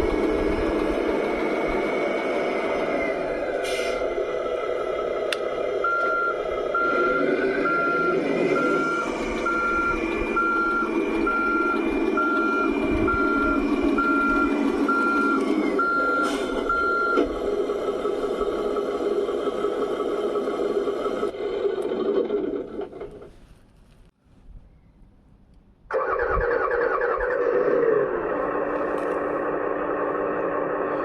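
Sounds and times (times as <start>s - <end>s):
toy truck engine sound: 0.0s - 23.3s, 25.9s - 31.0s
reversing beeper: 5.7s - 17.3s.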